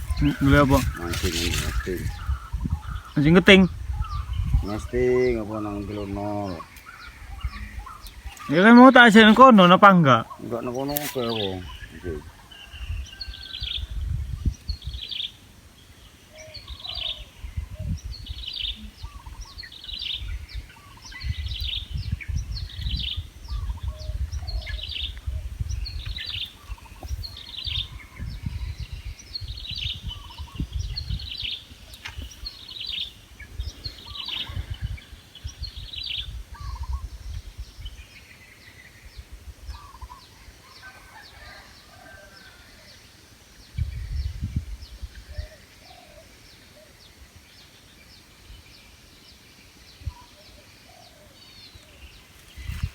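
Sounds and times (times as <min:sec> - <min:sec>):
gusty low rumble: 0:00.0 - 0:06.4.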